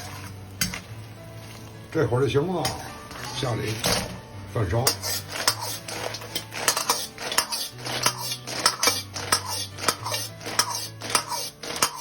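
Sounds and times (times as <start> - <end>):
metal ladle scraping a wok: 0.0 - 1.7, 2.6 - 4.2, 4.8 - 12.0.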